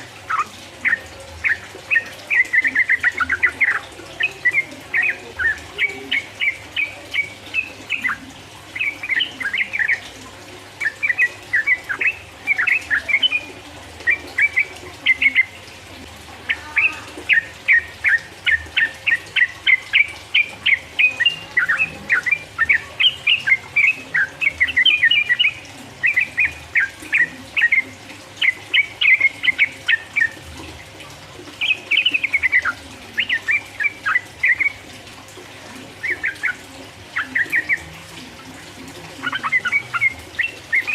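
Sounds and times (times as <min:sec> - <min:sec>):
bulbul singing chirpy notes: 0:00.0 - 0:15.7, 0:16.4 - 0:30.5, 0:31.6 - 0:35.0, 0:35.9 - 0:40.9.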